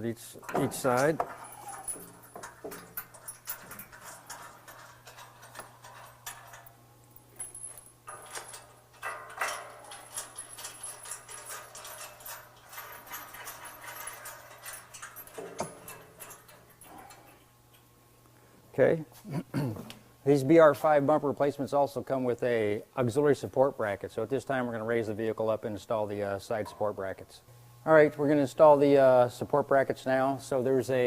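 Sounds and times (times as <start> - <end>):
metallic clicks of bolts and tools: 0.4 - 17.9.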